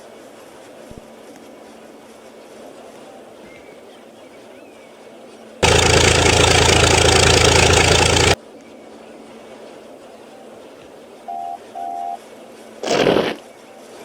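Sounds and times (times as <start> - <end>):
snow machine engine running: 5.6 - 8.4
short horn-like beep: 11.3 - 12.2.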